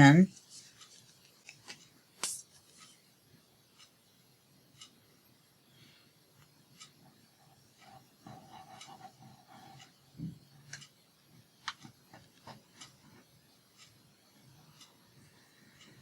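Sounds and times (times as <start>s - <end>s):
faint clicks and taps: 7.8s - 15.0s.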